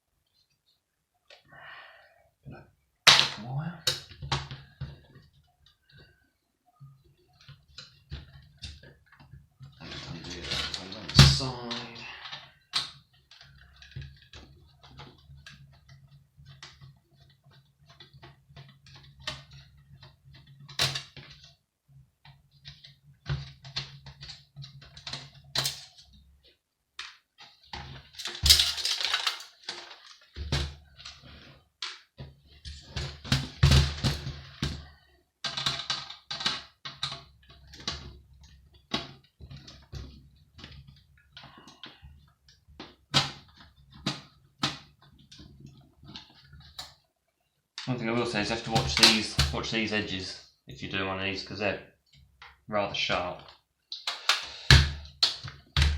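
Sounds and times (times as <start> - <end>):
hand tools clicking and rattling: 28.2 - 30.2.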